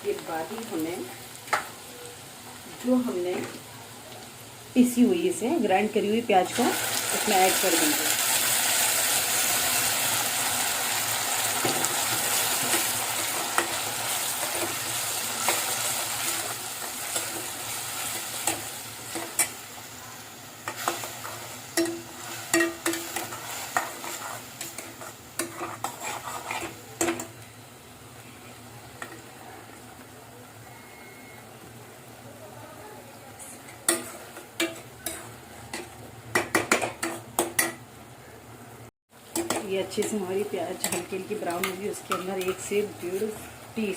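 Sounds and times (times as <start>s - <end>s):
onion paste sizzling in oil: 0.0s - 43.9s
spoon scraping and clinking pan: 21.8s - 27.3s.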